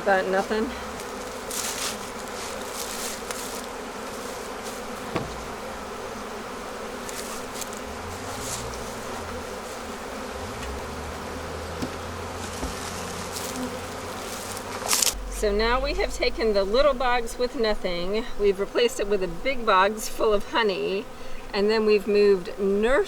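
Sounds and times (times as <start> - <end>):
bees buzzing: 0.0 - 23.0
sharp knock: 5.1 - 5.5.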